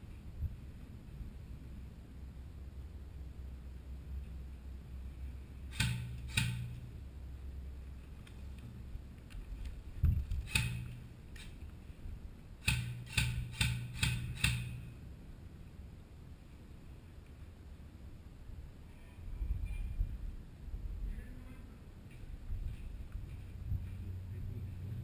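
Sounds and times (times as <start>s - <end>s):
airsoft gun shots: 5.7s - 6.9s, 10.4s - 11.1s, 12.6s - 14.9s.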